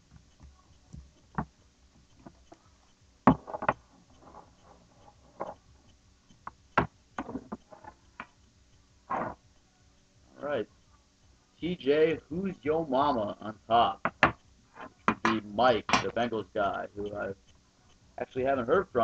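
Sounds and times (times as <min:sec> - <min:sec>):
soft handling noise: 0:00.0 - 0:10.1.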